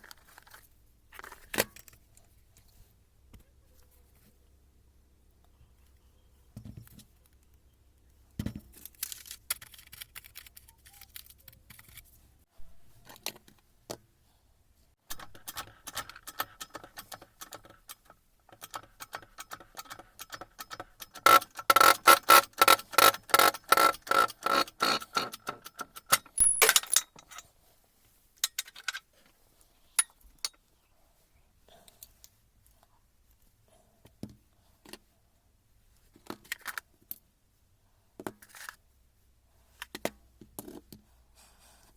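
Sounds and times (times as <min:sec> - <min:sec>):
metal tools clinking on workbench: 0:18.6 - 0:27.5.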